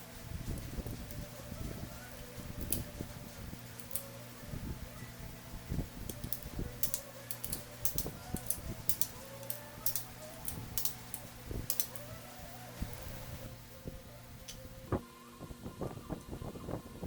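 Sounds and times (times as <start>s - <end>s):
steady low hum: 0.0s - 17.0s
tools and metal parts clicking: 2.4s - 3.0s, 3.7s - 4.2s, 6.0s - 12.2s.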